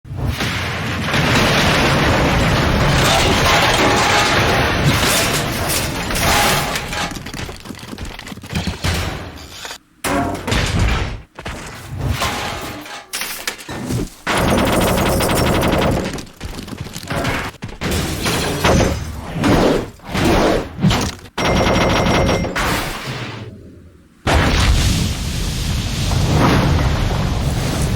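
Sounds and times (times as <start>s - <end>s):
metal crashing and bashing: 0.5s - 7.8s, 8.5s - 19.2s.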